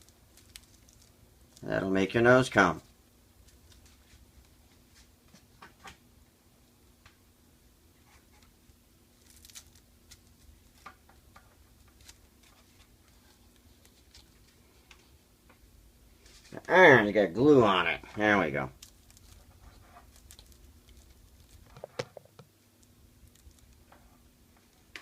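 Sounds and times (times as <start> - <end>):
small ticks and rustles: 0.0 - 1.7, 2.8 - 5.9, 8.0 - 15.6, 18.1 - 25.0
faint steady hum: 0.0 - 25.0.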